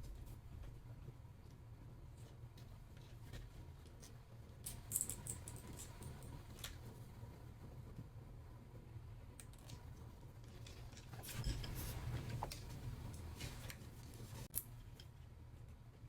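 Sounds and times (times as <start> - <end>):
small parts and tools clicking: 3.8 - 6.8, 9.4 - 15.2.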